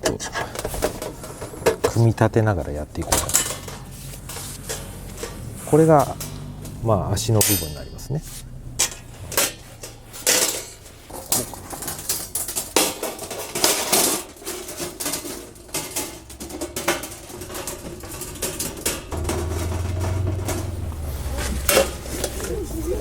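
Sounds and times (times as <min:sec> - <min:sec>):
metal parts clinking: 0:08.8 - 0:20.8
steady low rumble: 0:19.1 - 0:22.9.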